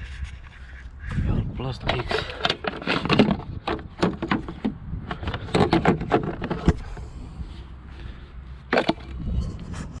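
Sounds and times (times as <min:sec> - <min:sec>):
plastic cover knocks and rattles: 0:02.4 - 0:06.8.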